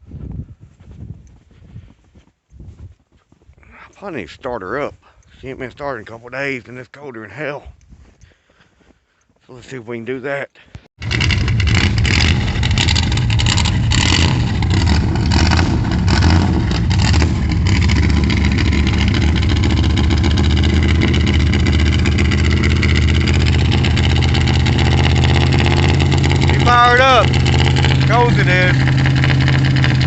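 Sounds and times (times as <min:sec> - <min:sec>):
car engine running unevenly: 0:11.0 - 0:30.0.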